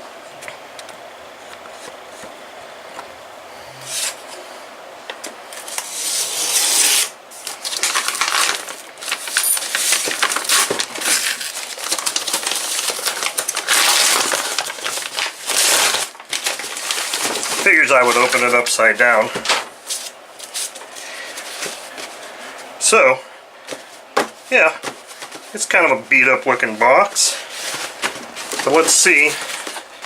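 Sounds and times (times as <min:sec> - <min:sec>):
cardboard scraping and rustling: 0:05.6 - 0:22.7, 0:26.6 - 0:30.0.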